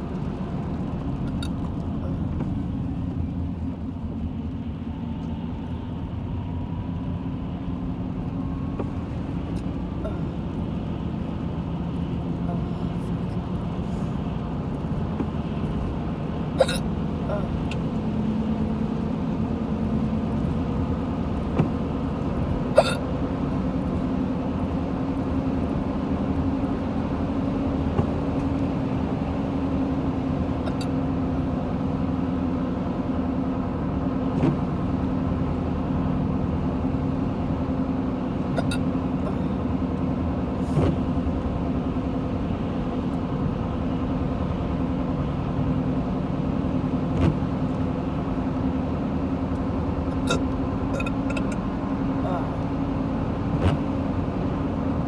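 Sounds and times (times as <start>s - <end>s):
car interior engine drone: 0.0s - 55.0s
person burping: 16.6s - 17.5s, 22.8s - 23.0s, 38.6s - 38.8s
person hiccuping: 16.6s - 17.6s, 22.7s - 23.0s, 30.7s - 30.9s, 38.6s - 39.5s, 51.0s - 51.6s, 52.2s - 52.6s.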